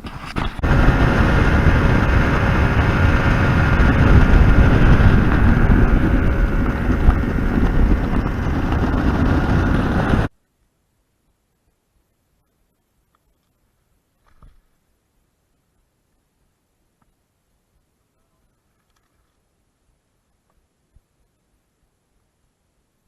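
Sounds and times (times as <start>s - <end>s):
outboard motor droning: 0.0s - 10.3s
wind buffeting microphone: 0.0s - 10.3s.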